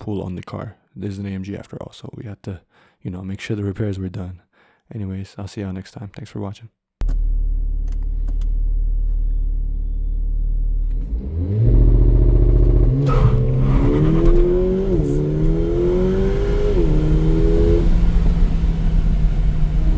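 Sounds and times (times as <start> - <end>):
car engine accelerating hard: 7.0 - 19.9
gear upshifts: 10.7 - 19.9.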